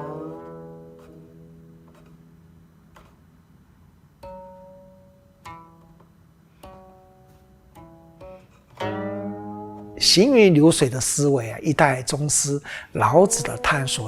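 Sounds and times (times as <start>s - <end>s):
plucked zither notes: 4.2s - 6.0s, 6.6s - 10.6s.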